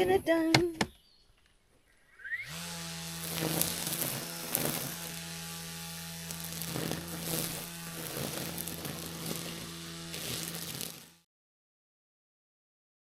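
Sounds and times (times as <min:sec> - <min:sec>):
electric string trimmer humming: 0:02.3 - 0:11.3
trimmer line swishing through weeds: 0:02.5 - 0:11.3.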